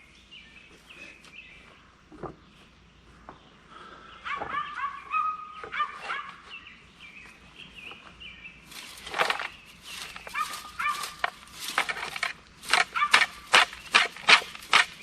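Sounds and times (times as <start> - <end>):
dog yipping: 4.3 - 6.4, 10.3 - 11.3, 12.9 - 13.5.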